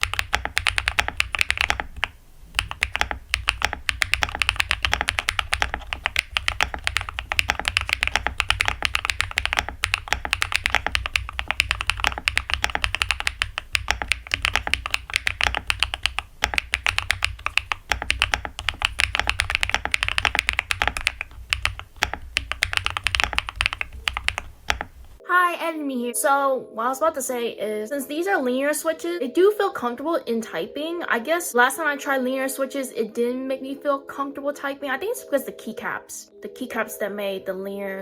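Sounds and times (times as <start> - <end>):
mechanical keyboard typing: 0.0 - 25.2.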